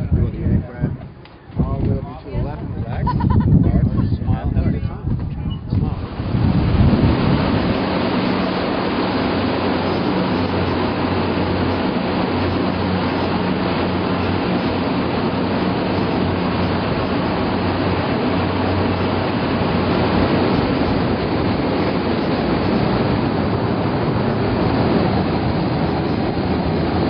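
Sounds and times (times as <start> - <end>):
wind rushing over microphone: 0.0 - 27.0
low hum: 5.6 - 27.0.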